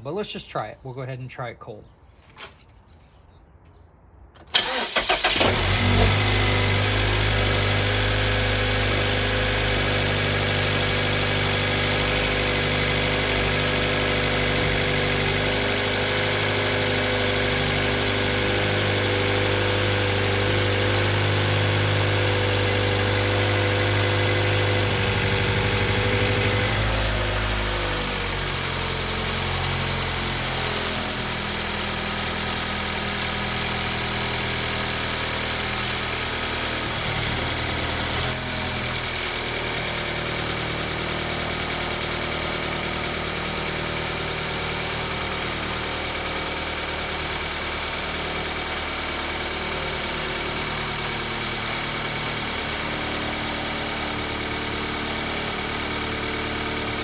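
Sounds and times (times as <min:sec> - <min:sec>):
car engine starting and idling: 0:04.3 - 0:57.0.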